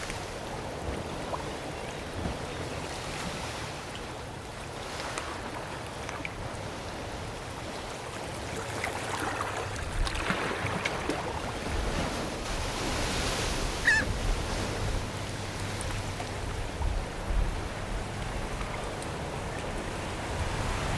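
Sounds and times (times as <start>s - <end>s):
surf washing: 0.0s - 20.9s
seagulls crying: 13.8s - 14.2s.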